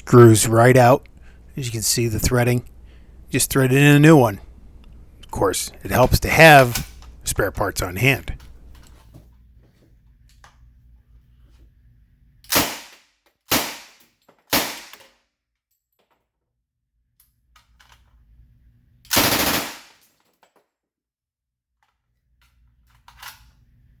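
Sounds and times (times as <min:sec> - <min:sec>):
submachine gun shots: 0:12.5 - 0:12.9, 0:13.5 - 0:15.0, 0:19.1 - 0:20.0.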